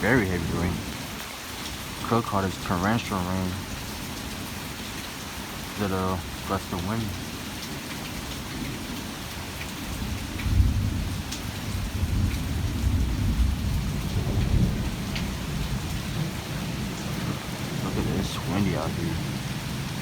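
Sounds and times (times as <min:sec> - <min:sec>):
heavy torrential rain: 0:00.0 - 0:20.0
deep thunder rumble: 0:10.4 - 0:20.0.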